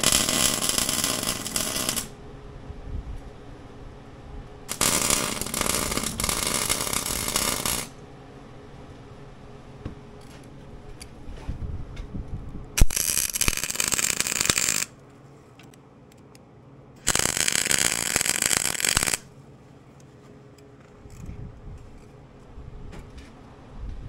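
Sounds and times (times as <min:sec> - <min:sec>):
crackling arc welding: 0:00.0 - 0:02.2, 0:04.7 - 0:08.0, 0:12.8 - 0:14.9, 0:17.0 - 0:19.3.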